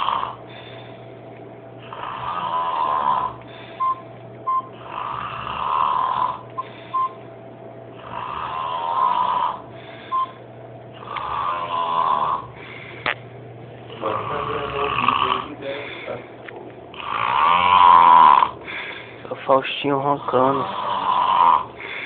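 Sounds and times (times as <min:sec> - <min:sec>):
man snoring heavily: 0:00.0 - 0:00.9, 0:01.8 - 0:03.8, 0:04.7 - 0:06.4, 0:07.9 - 0:10.3, 0:11.0 - 0:12.6, 0:13.9 - 0:16.2, 0:16.9 - 0:18.7, 0:20.0 - 0:22.0.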